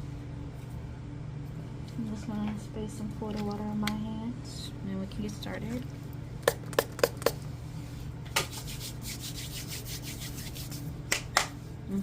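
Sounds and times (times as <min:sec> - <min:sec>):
hands rubbing together: 0:08.4 - 0:11.3.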